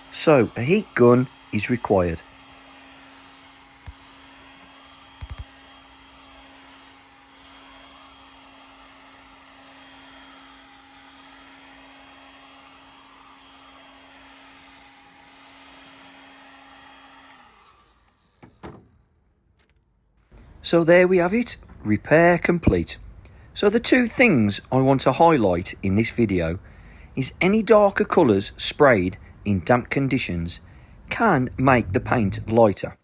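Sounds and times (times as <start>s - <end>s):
heat gun blowing: 0.0s - 19.1s.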